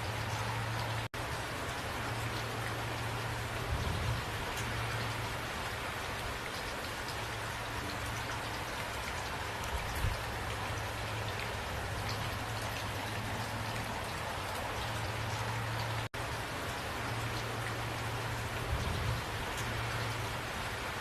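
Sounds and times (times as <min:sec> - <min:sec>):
rain pattering: 0:00.0 - 0:21.0.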